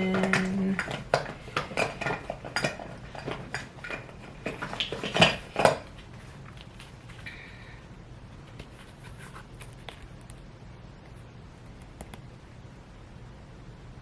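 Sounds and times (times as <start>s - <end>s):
plastic containers clicking: 0.0s - 6.7s.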